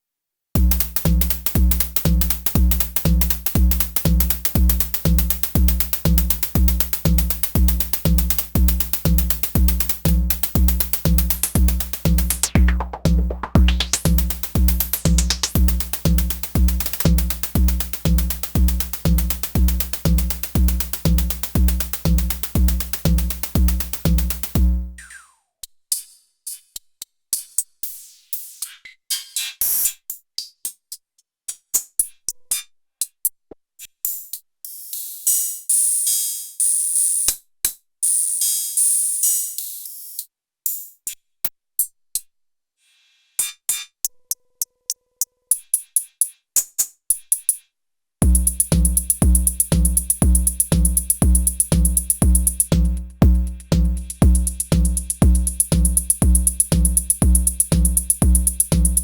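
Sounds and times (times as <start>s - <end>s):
drum machine beat: 0.6s - 25.0s, 48.2s - 59.0s
kick drum: 0.6s - 25.0s, 48.2s - 59.0s
hi-hat ticks: 0.6s - 25.1s, 45.5s - 59.0s.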